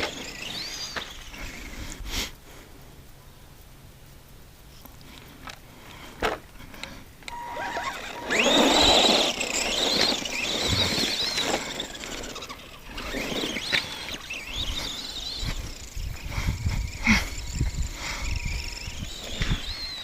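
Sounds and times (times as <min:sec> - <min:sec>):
electric motor whining: 0:00.0 - 0:01.9, 0:07.3 - 0:20.0
tires on dirt: 0:00.0 - 0:02.4, 0:05.3 - 0:20.0.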